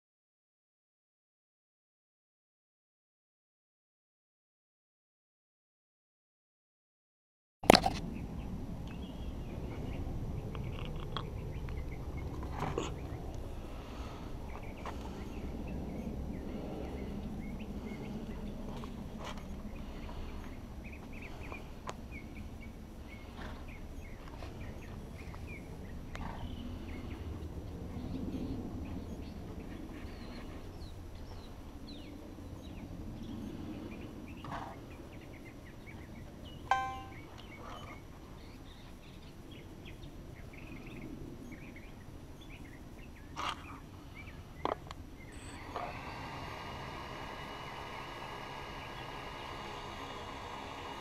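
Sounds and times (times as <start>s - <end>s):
low outdoor rumble: 7.7s - 45.8s.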